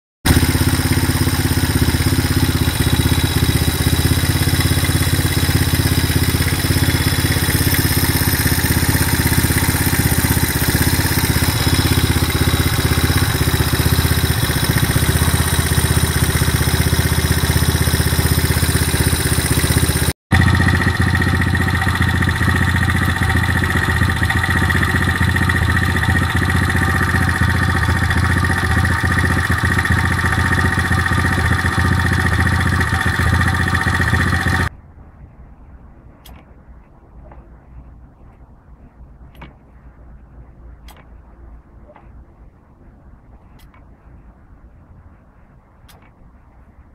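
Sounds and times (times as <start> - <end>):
fast engine clatter: 0.3 - 34.7
motorcycle engine idling: 0.3 - 34.7.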